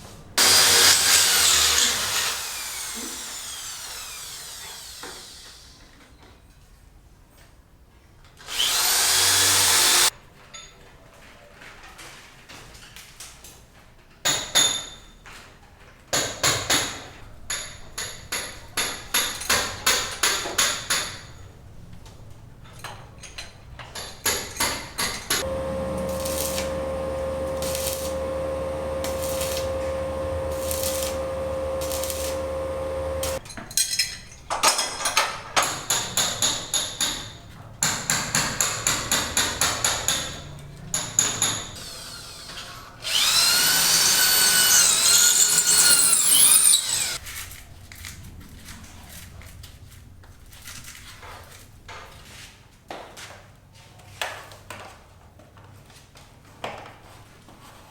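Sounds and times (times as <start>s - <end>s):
machine hum: 25.4s - 33.4s.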